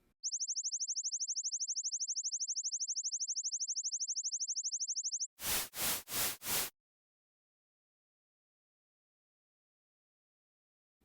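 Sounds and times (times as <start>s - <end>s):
rapid electronic chirps: 0.2s - 5.3s.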